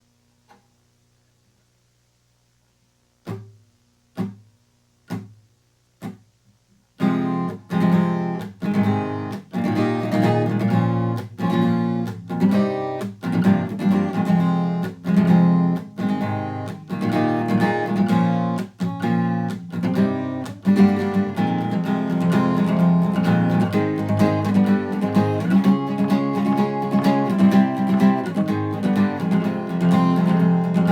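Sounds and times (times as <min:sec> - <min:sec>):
acoustic guitar strumming: 0:07.0 - 0:30.9.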